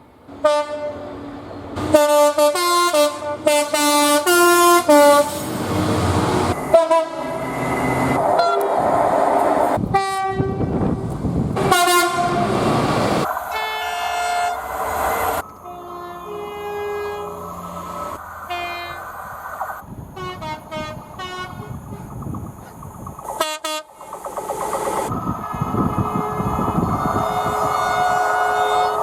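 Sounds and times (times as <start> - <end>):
train rushing by: 0.0 - 29.0
train horn blasts: 0.4 - 1.1, 1.8 - 5.5, 6.6 - 7.4, 9.9 - 10.8, 11.6 - 12.6, 13.5 - 14.7, 15.5 - 17.6, 18.5 - 19.0, 20.2 - 22.1, 23.4 - 24.0, 25.8 - 29.0.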